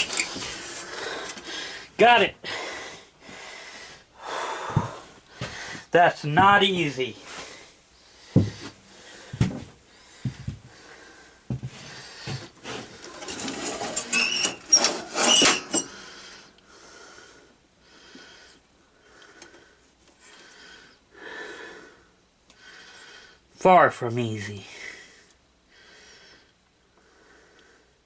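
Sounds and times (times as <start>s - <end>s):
metallic clattering and scraping: 0.0s - 1.4s, 12.6s - 16.1s
person breathing heavily: 0.4s - 5.9s, 7.2s - 13.2s, 15.8s - 23.5s, 24.6s - 28.0s.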